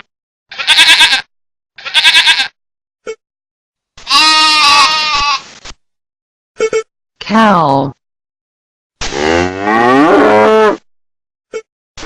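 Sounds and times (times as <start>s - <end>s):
goat and sheep bleating: 0.5s - 2.6s, 4.0s - 5.5s.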